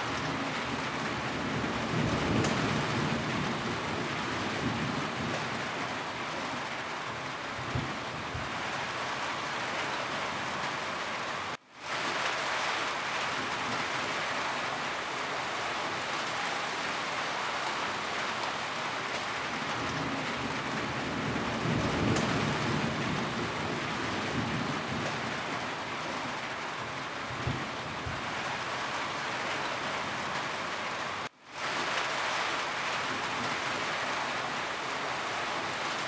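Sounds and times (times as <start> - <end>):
rain falling on a roof: 0.0 - 36.0.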